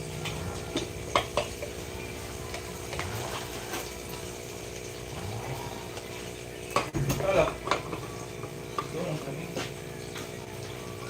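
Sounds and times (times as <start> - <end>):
utensils knocking against pot: 0.7 - 1.8, 6.7 - 9.0.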